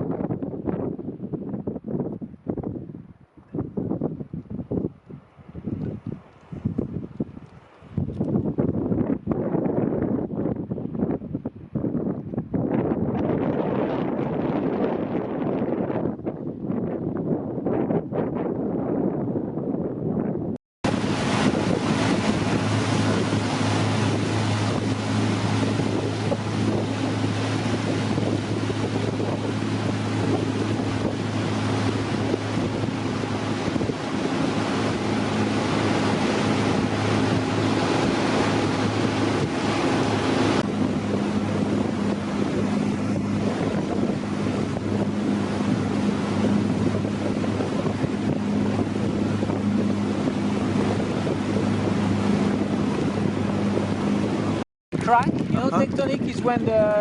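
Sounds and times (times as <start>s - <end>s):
water rushing past hull: 0.0s - 18.3s, 20.8s - 57.0s
wind buffeting microphone: 0.0s - 57.0s
outboard motor running: 20.8s - 57.0s.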